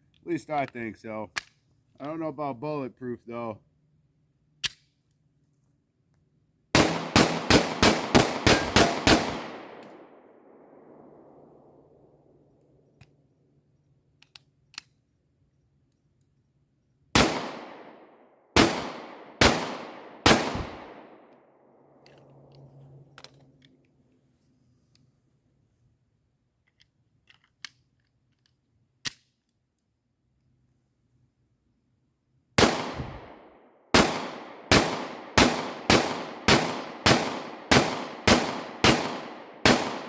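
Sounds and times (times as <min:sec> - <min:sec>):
pistol shots echoing: 0:06.7 - 0:11.4, 0:17.2 - 0:21.3, 0:32.6 - 0:40.0.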